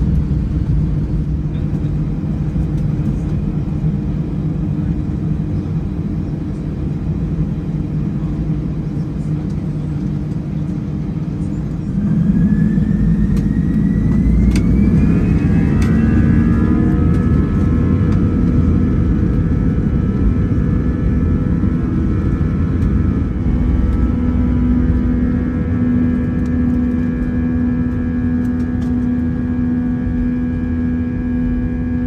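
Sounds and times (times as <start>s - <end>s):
jet engines spooling up: 11.3s - 20.8s, 21.6s - 29.1s.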